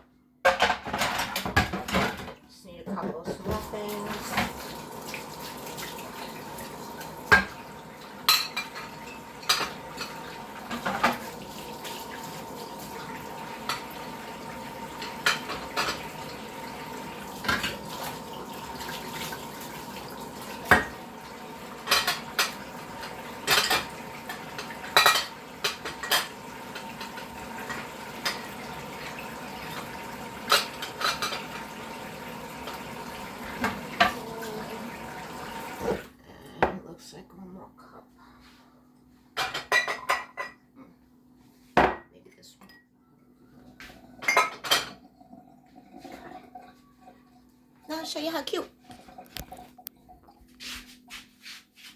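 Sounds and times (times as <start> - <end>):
dishes and cutlery clinking: 8.2 - 11.3, 15.0 - 16.1, 21.8 - 28.5, 30.5 - 31.5, 39.4 - 40.6, 43.8 - 45.0.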